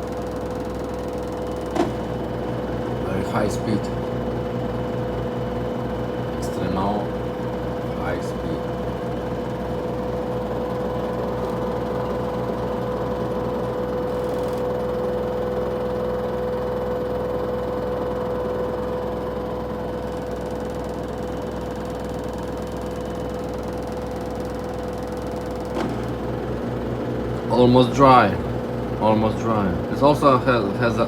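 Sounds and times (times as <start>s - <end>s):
washer drum spinning: 1.0s - 16.3s, 24.5s - 31.0s.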